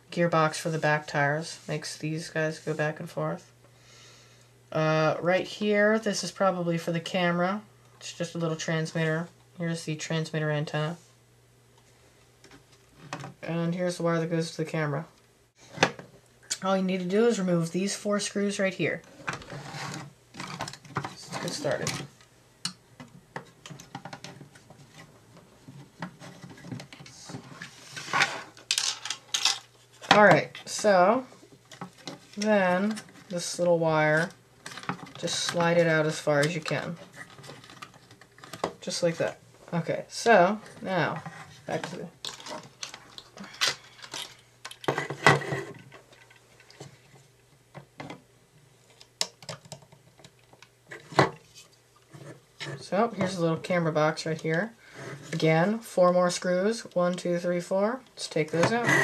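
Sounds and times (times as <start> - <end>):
rustling scrape: 19.1 - 22.2, 24.5 - 29.0
plastic parts clicking: 28.6 - 30.2.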